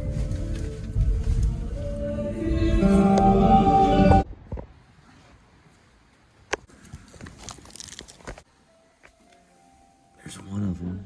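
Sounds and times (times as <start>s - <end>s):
music with long held notes: 0.0s - 4.2s
steady low rumble: 0.0s - 4.5s.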